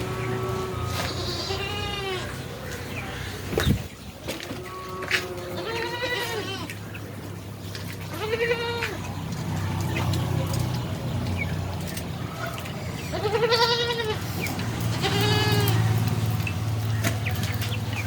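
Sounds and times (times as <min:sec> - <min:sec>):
goats bleating: 0:00.0 - 0:02.4, 0:04.6 - 0:06.8, 0:08.0 - 0:09.0, 0:13.0 - 0:16.1.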